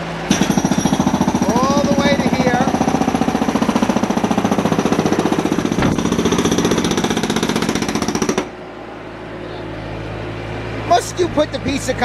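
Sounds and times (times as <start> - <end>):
concrete breaker hammering: 0.3 - 8.6
sharp knock: 5.8 - 6.3.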